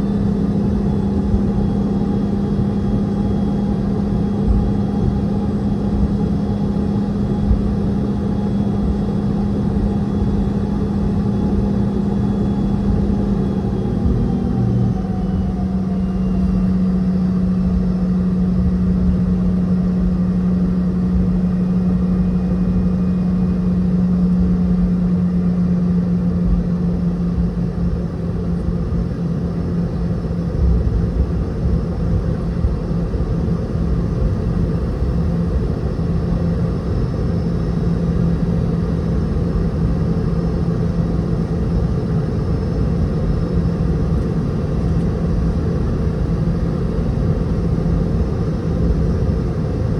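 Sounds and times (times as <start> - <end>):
jet engine cabin drone: 0.0 - 49.9.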